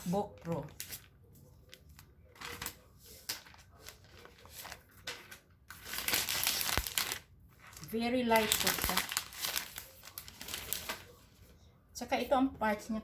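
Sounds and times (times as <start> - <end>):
packaging taps and rustles: 3.3 - 11.0.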